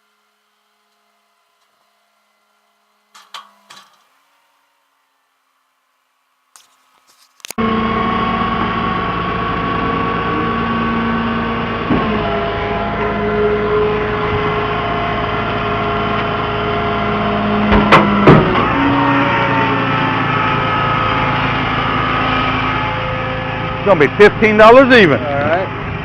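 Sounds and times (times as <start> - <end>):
truck engine running: 7.6 - 26.0.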